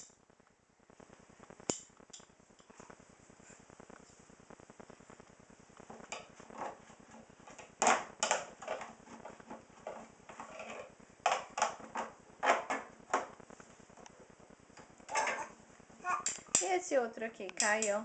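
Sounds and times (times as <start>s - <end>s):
dishes and cutlery clattering: 15.1s - 15.5s.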